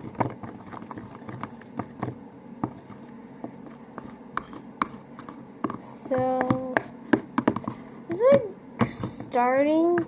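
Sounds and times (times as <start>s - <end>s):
slime clicking and scraping: 0.0s - 8.2s.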